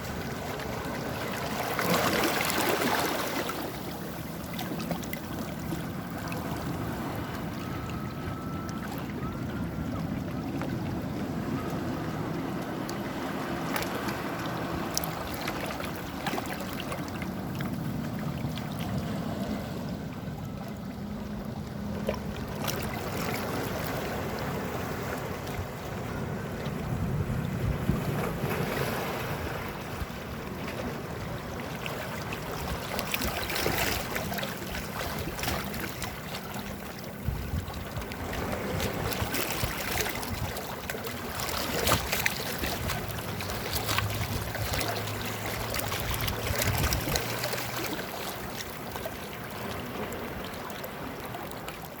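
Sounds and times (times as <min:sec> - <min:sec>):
small water splashes: 0:00.0 - 0:19.8, 0:21.7 - 0:25.7, 0:31.6 - 0:52.0
waves washing against shore: 0:00.0 - 0:52.0
wind buffeting microphone: 0:24.1 - 0:31.6, 0:36.8 - 0:47.5.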